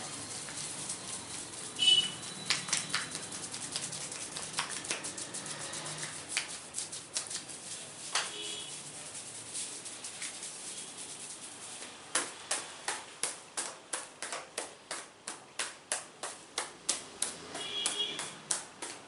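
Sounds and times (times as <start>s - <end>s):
hands massaging oiled hair: 0.0s - 19.0s.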